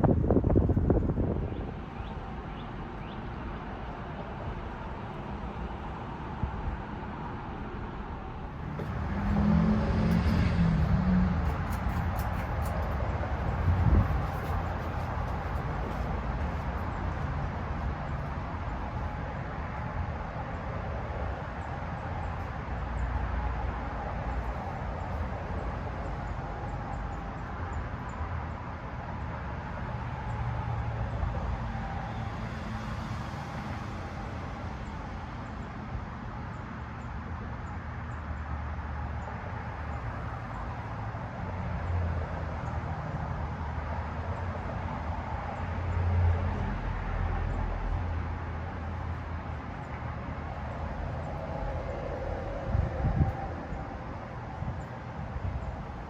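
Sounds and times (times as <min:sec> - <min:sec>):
ceiling fan air rushing: 0:00.0 - 0:30.0, 0:48.3 - 0:56.0.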